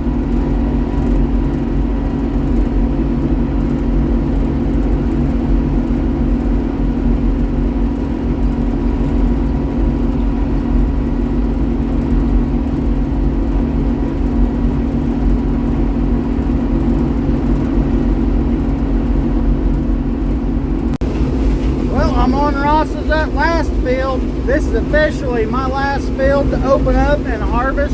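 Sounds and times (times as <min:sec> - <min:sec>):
combine harvester engine drone: 0:20.0 - 0:27.9.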